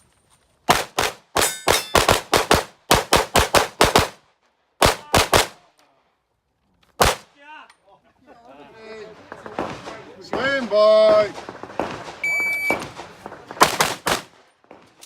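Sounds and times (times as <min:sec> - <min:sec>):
pistol shots: 0:00.7 - 0:04.2, 0:07.0 - 0:07.3, 0:09.5 - 0:14.8.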